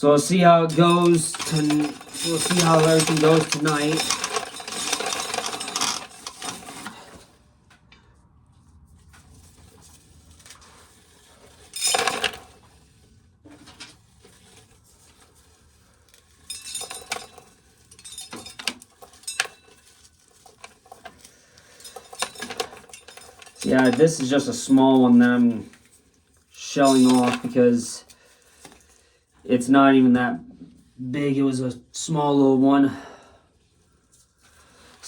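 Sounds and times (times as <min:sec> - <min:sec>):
corn kernels clattering in sheller: 0:00.0 - 0:07.3, 0:11.2 - 0:12.7, 0:15.3 - 0:25.8, 0:26.6 - 0:28.1.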